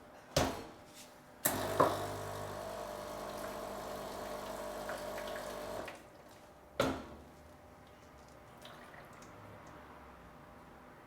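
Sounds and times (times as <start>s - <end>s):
espresso machine pump humming: 1.5s - 5.9s
water running: 1.6s - 5.9s.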